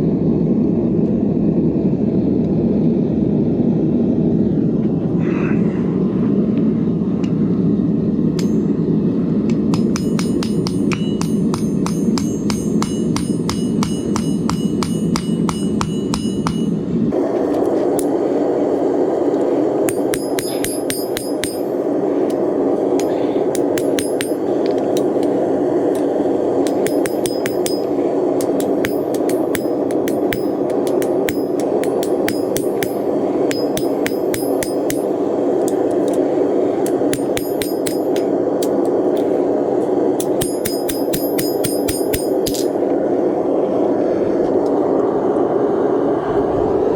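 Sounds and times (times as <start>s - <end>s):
gas forge burner rushing: 7.9s - 46.9s
hammer ringing on anvil: 9.7s - 16.9s, 19.9s - 21.9s, 23.0s - 25.2s, 26.6s - 35.2s, 36.8s - 38.8s, 40.2s - 42.8s.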